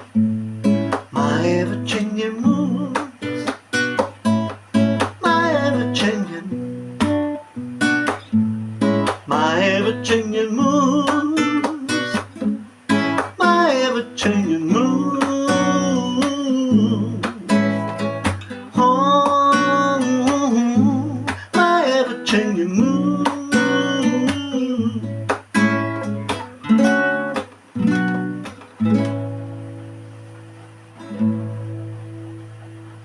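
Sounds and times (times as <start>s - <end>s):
acoustic guitar strumming: 0.0s - 33.0s
person singing wordlessly: 1.0s - 3.6s, 5.0s - 6.7s, 9.2s - 12.3s, 13.1s - 25.5s.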